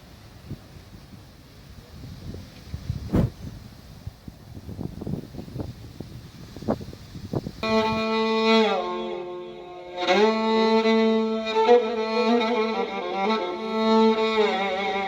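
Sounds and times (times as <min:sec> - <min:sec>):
wind buffeting microphone: 0:00.3 - 0:08.2
slow bowed string music: 0:07.6 - 0:15.0.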